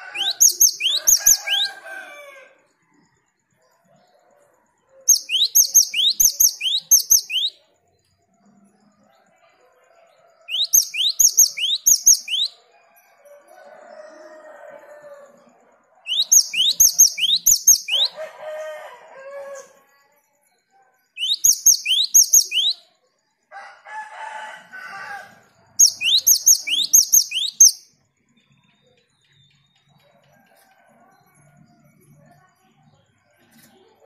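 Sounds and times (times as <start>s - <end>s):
bird chattering calls: 0.0s - 1.7s, 5.1s - 7.6s, 10.5s - 12.5s, 16.1s - 18.2s, 21.2s - 22.8s, 25.8s - 27.8s
bird singing whistled notes: 0.0s - 1.8s, 5.1s - 7.6s, 10.5s - 12.6s, 16.1s - 18.2s, 21.1s - 22.9s, 25.8s - 27.9s.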